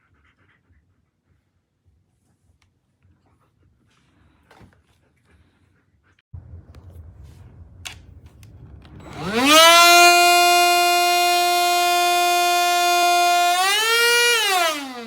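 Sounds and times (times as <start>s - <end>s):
handheld vacuum motor whining: 9.0s - 15.0s.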